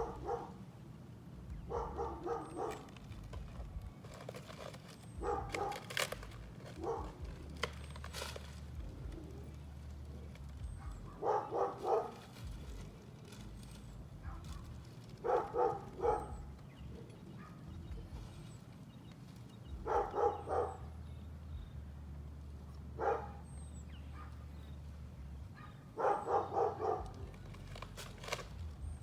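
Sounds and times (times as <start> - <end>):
dog barking: 0.0 - 0.6, 1.5 - 3.0, 5.2 - 7.9, 10.6 - 12.8, 14.2 - 18.5, 19.7 - 21.0, 23.0 - 24.5, 25.5 - 27.4
steady low hum: 0.0 - 4.1, 5.0 - 29.0.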